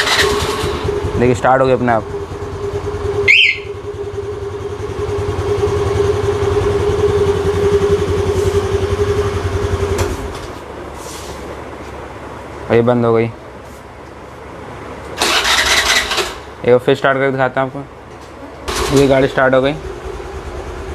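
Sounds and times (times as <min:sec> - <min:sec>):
scooter engine idling: 0:00.0 - 0:10.4, 0:18.7 - 0:20.9
high chirp: 0:03.2 - 0:03.9.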